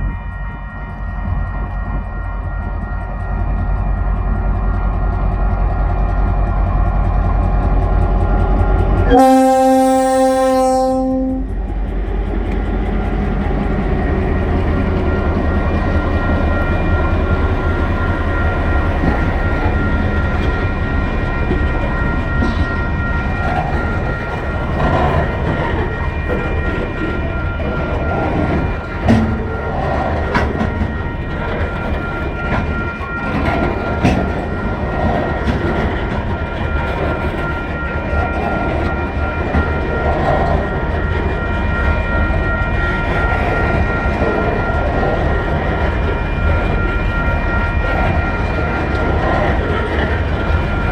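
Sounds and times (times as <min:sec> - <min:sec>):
freight train rumbling past: 0:00.0 - 0:50.9.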